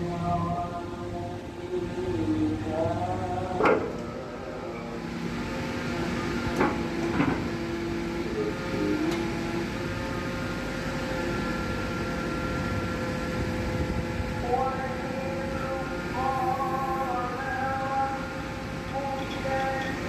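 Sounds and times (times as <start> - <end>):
pile driver engine drone: 0.0 - 20.0.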